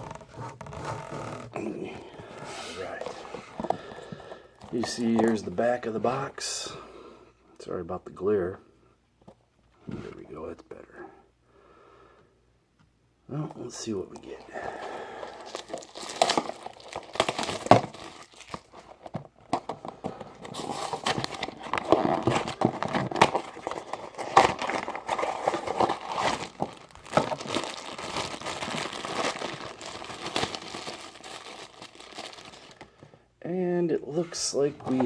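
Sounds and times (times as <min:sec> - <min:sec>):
packaging crinkling and tearing: 0:14.2 - 0:33.0.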